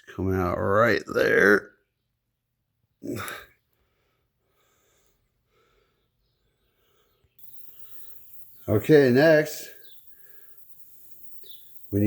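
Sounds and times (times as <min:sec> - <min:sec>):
faint soft hisses: 0:07.4 - 0:12.0
steady background hiss: 0:07.4 - 0:12.0.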